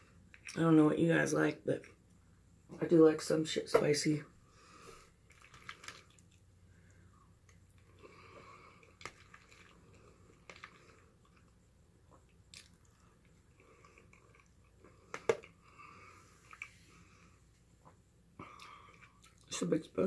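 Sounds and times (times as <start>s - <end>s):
soft food handling sounds: 4.6s - 19.5s.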